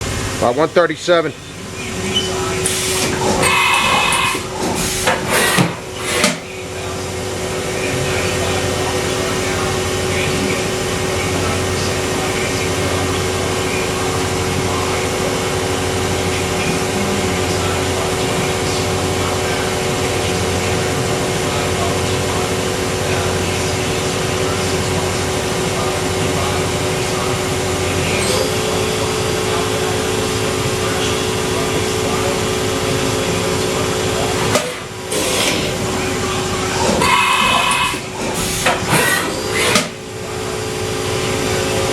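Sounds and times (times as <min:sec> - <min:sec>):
machine humming with low pulsing: 0:00.0 - 0:41.9.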